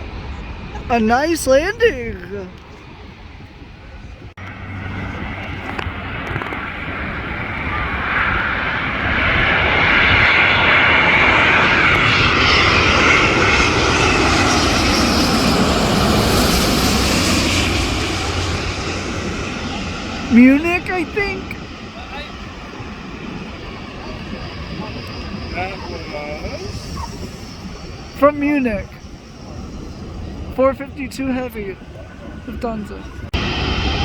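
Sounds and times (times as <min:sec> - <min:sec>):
jet engines passing: 0:00.0 - 0:34.0.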